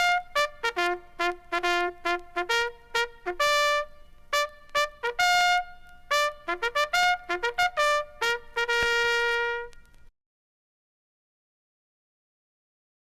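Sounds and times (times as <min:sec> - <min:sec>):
bugle call: 0:00.0 - 0:10.0.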